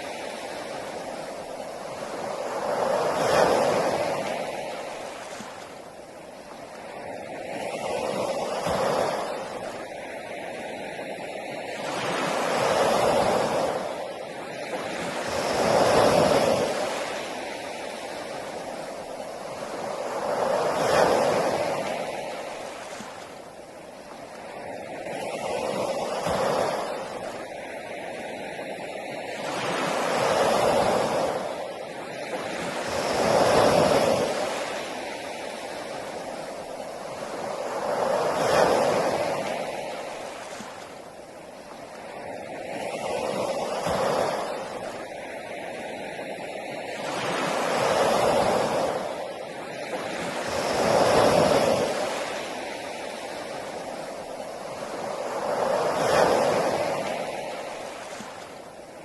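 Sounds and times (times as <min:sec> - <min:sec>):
sea waves breaking on beach: 0:00.0 - 0:59.0.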